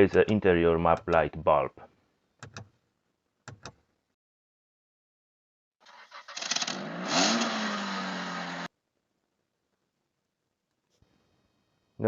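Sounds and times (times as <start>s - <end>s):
engine revving: 5.9s - 8.7s.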